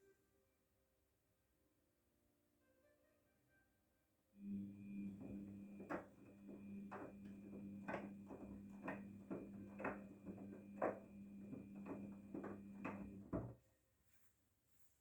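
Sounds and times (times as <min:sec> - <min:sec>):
washing machine clicks: 0:04.4 - 0:13.6
washing machine hum: 0:04.4 - 0:13.6.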